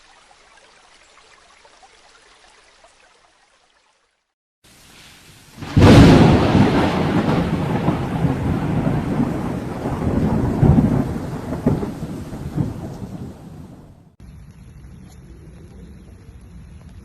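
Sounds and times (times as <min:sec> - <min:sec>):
rolling thunder: 0:05.6 - 0:14.2
thunderclap: 0:05.6 - 0:14.2.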